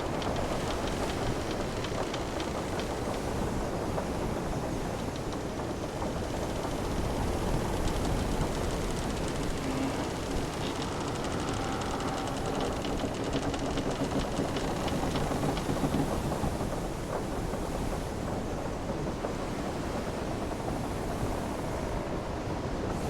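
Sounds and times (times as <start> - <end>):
hull timbers creaking: 0.0 - 3.5, 4.8 - 16.0.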